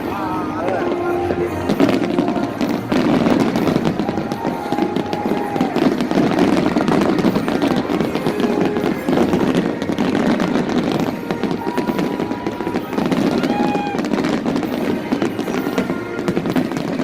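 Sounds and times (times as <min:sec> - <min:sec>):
fireworks crackling: 0:00.0 - 0:17.0
people's voices: 0:00.0 - 0:17.0.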